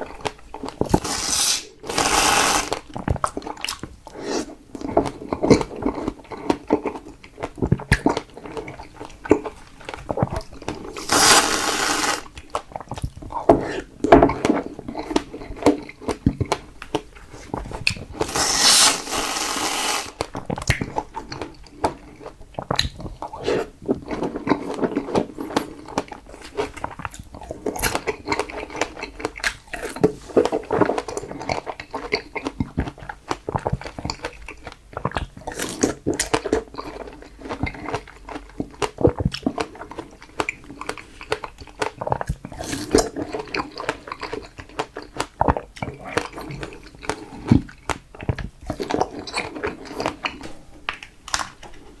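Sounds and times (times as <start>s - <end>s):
wet chewing and biting: 0.0s - 52.0s.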